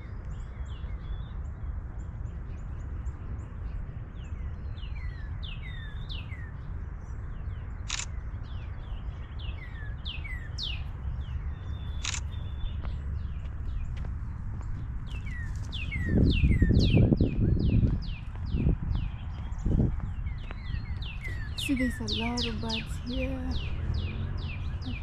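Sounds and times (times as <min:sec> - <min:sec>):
small birds chirping: 0:00.0 - 0:25.0
sharp clicks: 0:07.9 - 0:08.2, 0:12.0 - 0:12.4.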